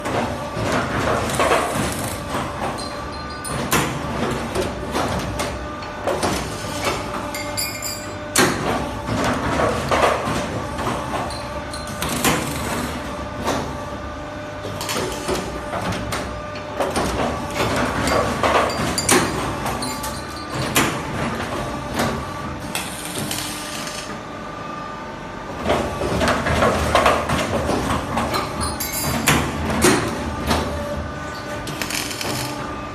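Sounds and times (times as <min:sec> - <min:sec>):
machine clatter: 0:00.0 - 0:13.8, 0:31.4 - 0:32.7.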